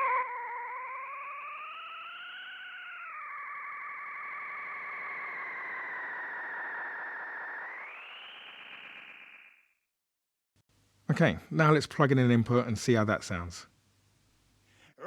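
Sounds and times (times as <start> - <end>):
analog delay oscillating tone: 0.0 - 9.8.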